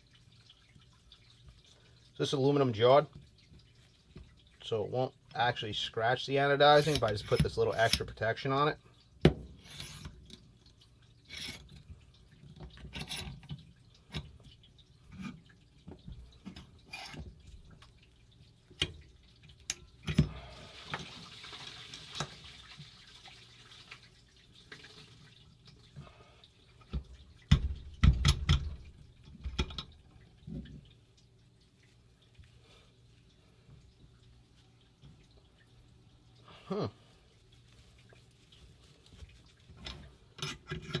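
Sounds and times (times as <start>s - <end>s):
metal tools clicking and knocking: 6.7s - 8.2s, 39.8s - 41.0s
soft hiss: 30.2s - 40.4s.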